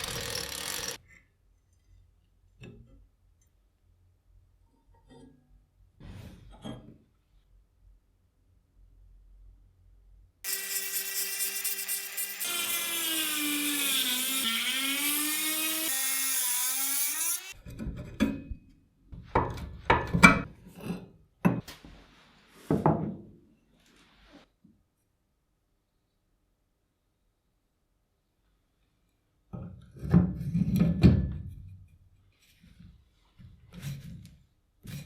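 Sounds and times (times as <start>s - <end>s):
power tool motor running: 0.0s - 1.0s, 10.5s - 17.6s.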